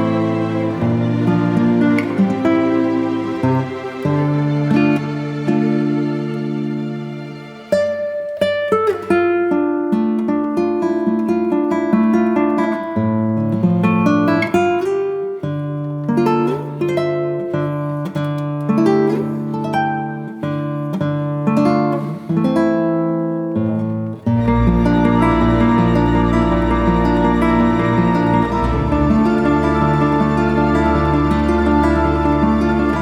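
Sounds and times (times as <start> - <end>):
plucked guitar notes: 0.0 - 9.3, 23.7 - 33.0
held bass note: 24.4 - 33.0.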